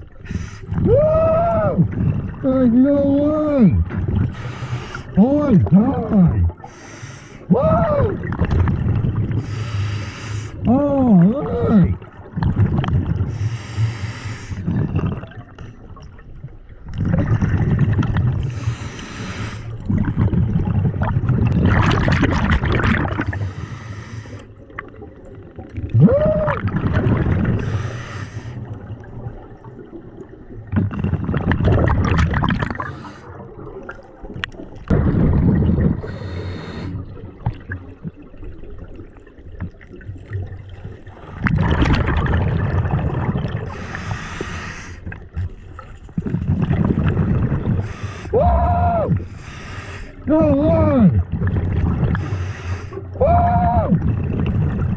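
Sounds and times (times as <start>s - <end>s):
exhaled bubbles rumbling: 0.0s - 54.9s
regulator inhale hiss: 4.4s - 5.1s, 6.6s - 7.5s, 9.4s - 10.6s, 13.3s - 14.6s, 18.5s - 19.8s, 23.4s - 24.5s, 27.6s - 28.7s, 36.0s - 37.0s, 43.7s - 45.1s, 47.8s - 48.3s, 49.3s - 50.2s, 52.2s - 53.0s.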